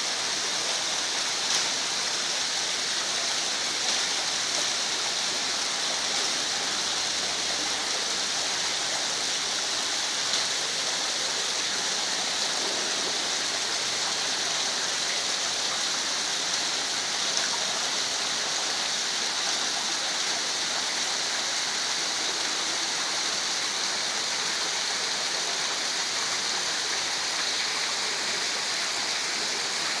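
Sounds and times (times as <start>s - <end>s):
waterfall splashing: 0.0s - 30.0s.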